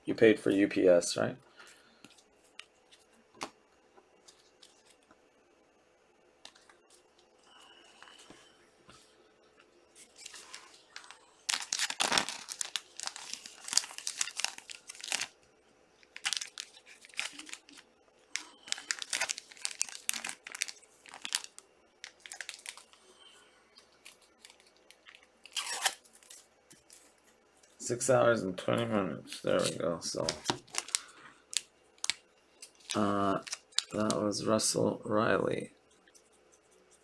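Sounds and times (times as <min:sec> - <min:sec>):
wrappers crinkling and tearing: 0:10.0 - 0:15.4, 0:16.0 - 0:23.0, 0:24.0 - 0:27.0, 0:29.4 - 0:34.2.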